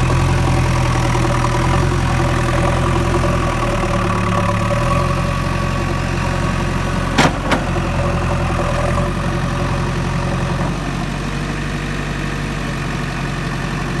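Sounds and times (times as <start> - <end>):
diesel engine running: 0.0 - 14.0
sharp metallic knocks: 7.2 - 8.3.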